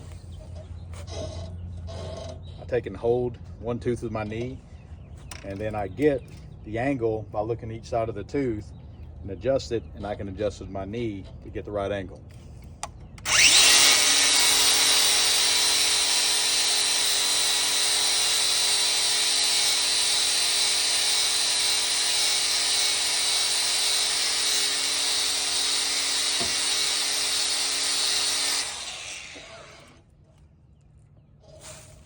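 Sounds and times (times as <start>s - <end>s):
grinder motor whine: 13.2s - 30.1s.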